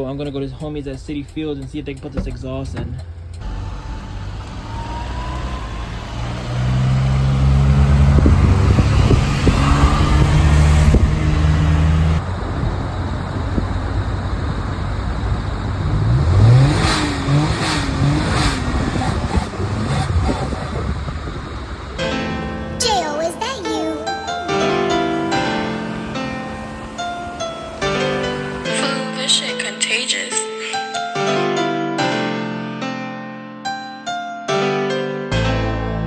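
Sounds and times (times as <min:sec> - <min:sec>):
small truck engine running: 0:00.0 - 0:28.8.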